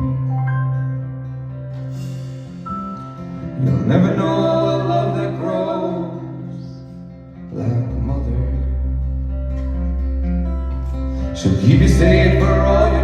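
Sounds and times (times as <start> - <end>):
rock band playing live: 0.0 - 4.8
lead vocal singing: 3.6 - 8.8, 11.3 - 13.0.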